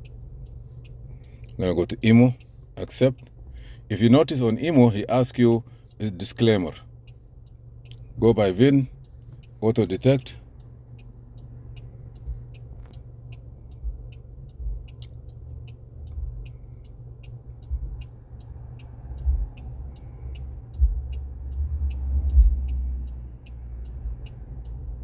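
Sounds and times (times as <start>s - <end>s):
hazard-light flasher ticking: 0.0s - 25.0s
low hum: 0.0s - 25.0s
dull low thumps: 8.9s - 25.0s.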